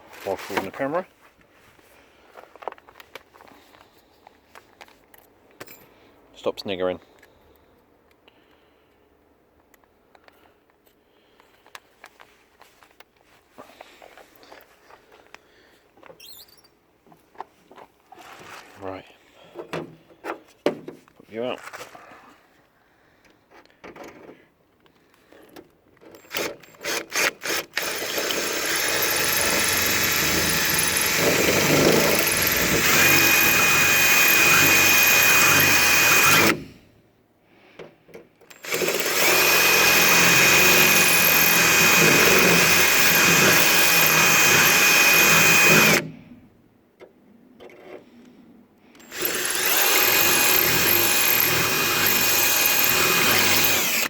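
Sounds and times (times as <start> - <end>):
power drill boring into steel: 26.2 - 36.7, 38.5 - 46.1, 49.0 - 54.0.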